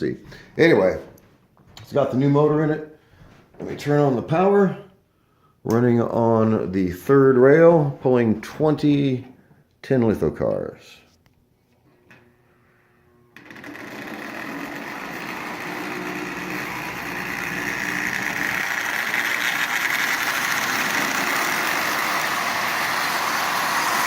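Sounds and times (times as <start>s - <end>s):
toy train running on track: 13.4s - 24.0s.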